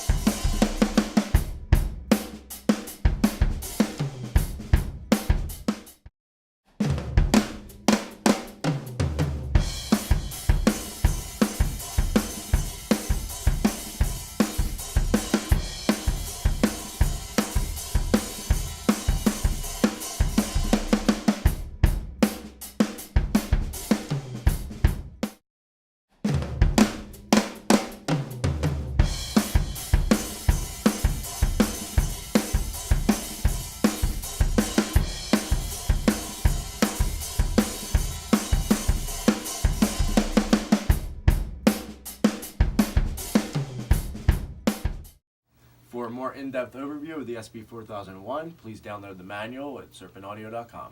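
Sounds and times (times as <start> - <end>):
hi-hat and cymbals: 0.0 - 1.5, 9.6 - 24.5, 29.0 - 44.9
drum kit playing a groove: 0.0 - 6.1, 6.8 - 25.4, 26.2 - 45.2.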